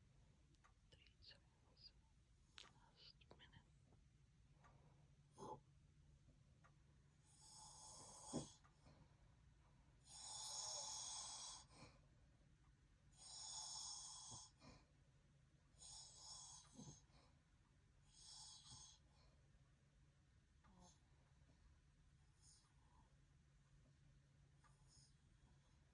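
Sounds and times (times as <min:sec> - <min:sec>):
man snoring with rasping breaths: 0:07.3 - 0:08.6, 0:10.0 - 0:11.7, 0:13.2 - 0:14.6, 0:15.8 - 0:17.0, 0:18.1 - 0:19.0.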